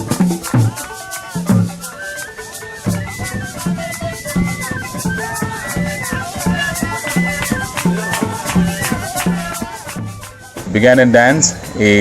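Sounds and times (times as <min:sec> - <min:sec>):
drums beating: 0:00.0 - 0:12.0
rattles shaking: 0:00.0 - 0:12.0
melody: 0:01.7 - 0:10.8.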